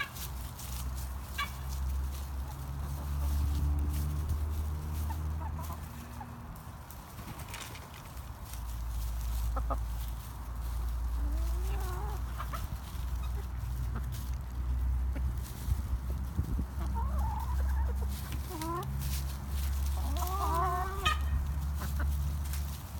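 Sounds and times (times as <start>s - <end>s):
hens clucking softly: 4.6s - 6.6s, 7.4s - 22.8s
steady low rumble: 8.2s - 20.1s.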